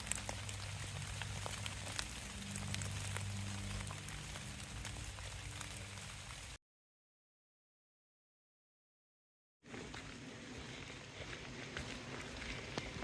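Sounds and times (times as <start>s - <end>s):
low steady hum: 0.0s - 6.6s
rain falling steadily: 0.0s - 6.6s.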